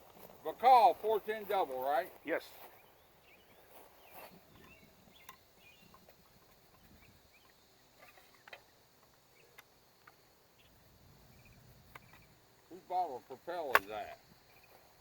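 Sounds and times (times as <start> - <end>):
faint bird-like chirps: 2.6 - 12.3.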